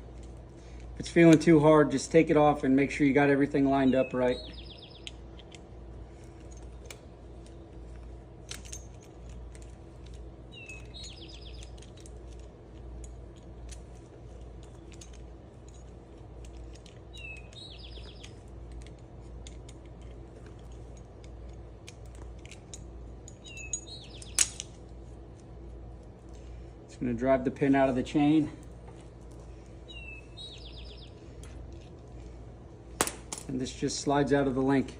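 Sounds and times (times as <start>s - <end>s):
steady low hum: 0.0s - 34.9s
songbird trilling: 3.8s - 5.1s, 10.5s - 11.7s, 17.1s - 18.4s, 23.4s - 24.4s, 29.9s - 31.2s.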